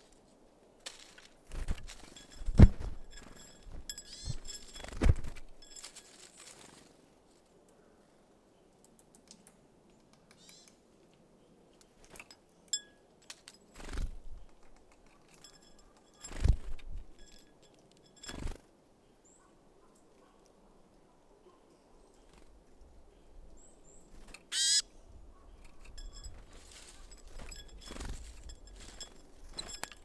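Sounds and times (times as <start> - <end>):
wings fluttering: 0.8 - 7.0, 13.8 - 17.5, 18.2 - 18.6, 24.1 - 24.8, 25.5 - 30.0
short high bird calls: 24.5 - 25.0.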